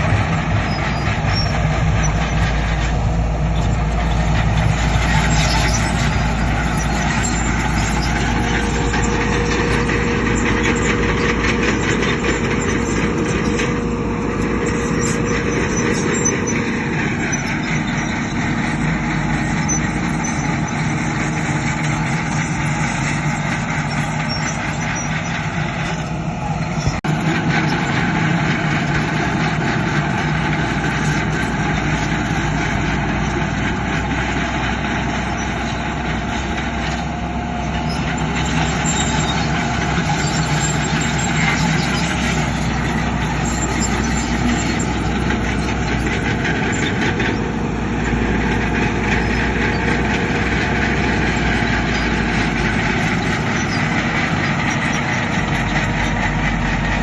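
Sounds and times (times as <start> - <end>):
heavy machinery diesel engines: 0.0 - 57.0.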